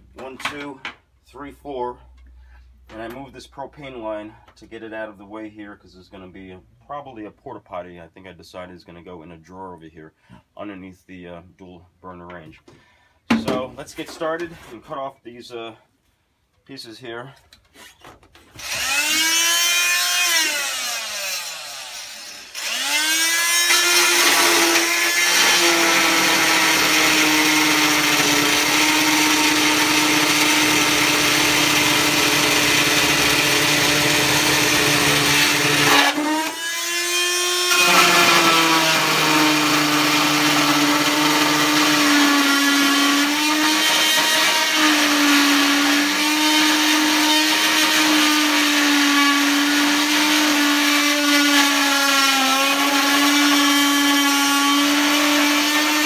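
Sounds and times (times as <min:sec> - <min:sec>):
oscillating multi-tool cutting metal: 0:18.6 - 0:56.0.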